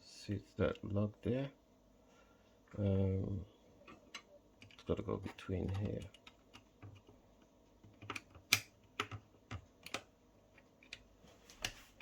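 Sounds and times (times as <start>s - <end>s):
door lock parts clicking: 7.9s - 10.1s.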